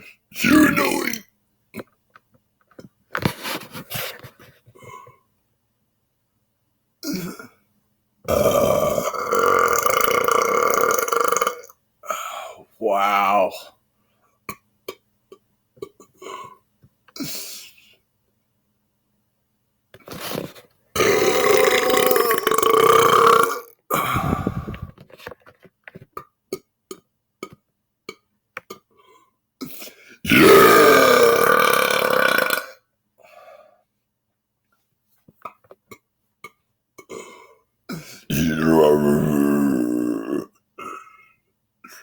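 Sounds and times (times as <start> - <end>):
man belching loudly: 0.4 - 1.3, 8.3 - 11.7, 21.0 - 24.9, 30.3 - 32.8, 38.3 - 41.0.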